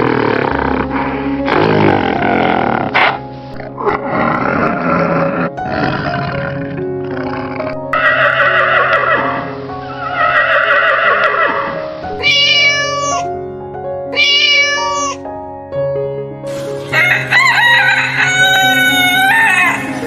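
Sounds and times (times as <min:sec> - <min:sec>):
background music: 0:00.0 - 0:20.0
animal calls: 0:08.0 - 0:13.3, 0:14.2 - 0:15.2
rooster crowing: 0:16.9 - 0:20.0.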